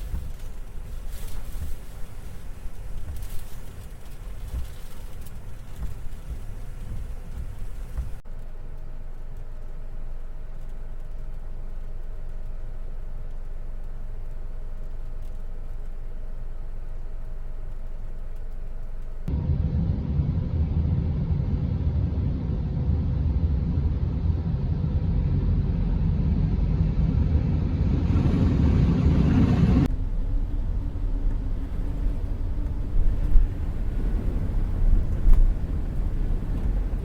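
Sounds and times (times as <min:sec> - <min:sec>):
rain: 0:00.0 - 0:19.3, 0:29.4 - 0:37.0
wind gusting against microphone: 0:19.3 - 0:37.0.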